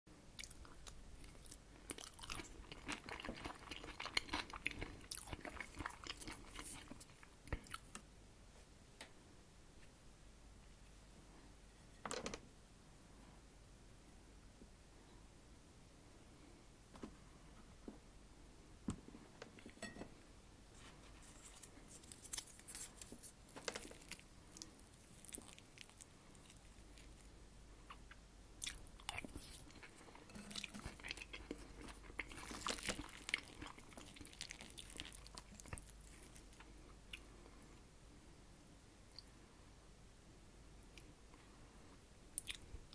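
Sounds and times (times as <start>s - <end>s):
close chewing and mouth clicks: 0.3s - 8.1s, 21.5s - 37.5s, 42.4s - 42.9s.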